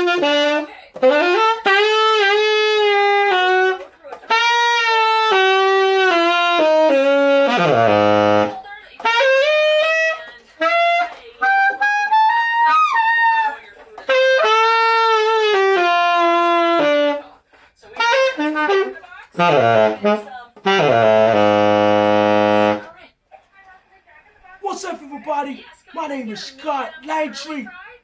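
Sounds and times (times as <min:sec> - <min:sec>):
tenor saxophone playing jazz: 0:00.0 - 0:23.0
player breathing: 0:17.4 - 0:17.9.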